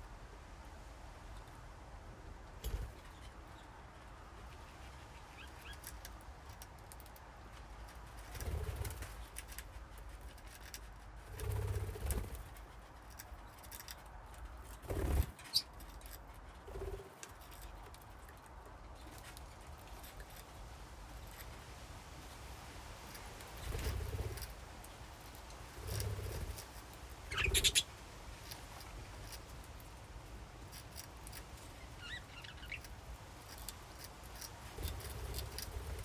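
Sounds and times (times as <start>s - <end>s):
birds thudding and rustling: 2.5s - 36.0s
budgerigars clicking and chirping: 5.1s - 6.1s, 27.3s - 27.9s, 31.3s - 36.0s
high bird chirp: 27.3s - 27.9s, 31.8s - 32.9s.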